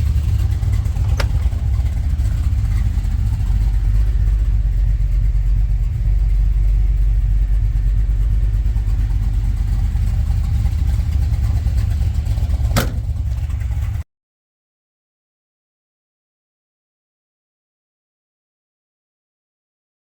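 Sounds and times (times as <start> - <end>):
engine running deep: 0.0 - 14.0
sharp click: 12.8 - 13.0.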